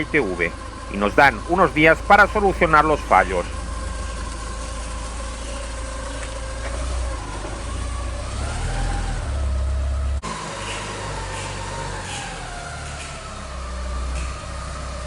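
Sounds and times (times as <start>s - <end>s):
car engine running: 0.0s - 8.6s.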